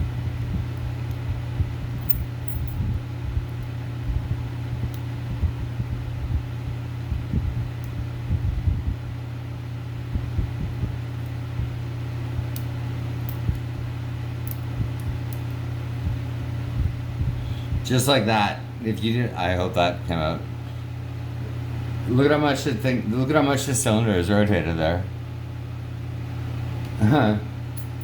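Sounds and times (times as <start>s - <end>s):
electric fans humming: 0.0s - 28.0s
metallic clicks of lock picking: 14.5s - 15.6s.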